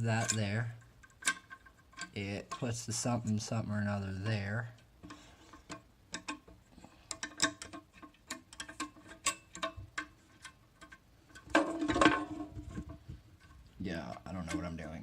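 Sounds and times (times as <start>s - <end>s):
metal lock mechanism clicking: 0.2s - 2.7s.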